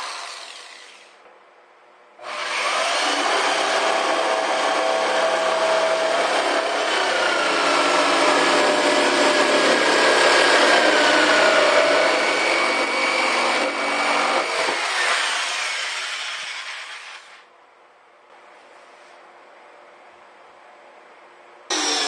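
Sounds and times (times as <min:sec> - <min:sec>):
power tool grinding: 0:02.2 - 0:17.4, 0:21.7 - 0:22.0.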